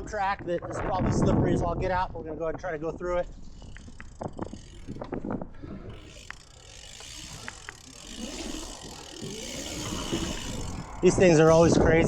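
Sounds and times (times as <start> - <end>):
tyre and wind noise: 0.0 - 12.0
bike hub ratchet clicking: 2.7 - 12.0.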